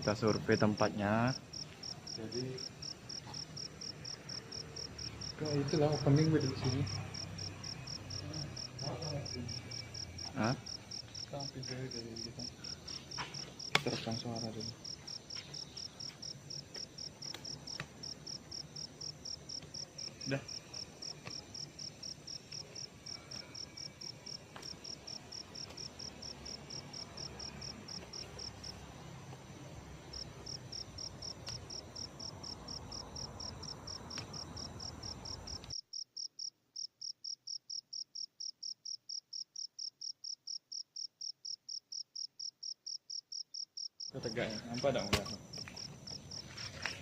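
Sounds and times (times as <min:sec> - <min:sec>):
low background noise: 0:00.0 - 0:35.7
cricket chirping: 0:00.0 - 0:47.0.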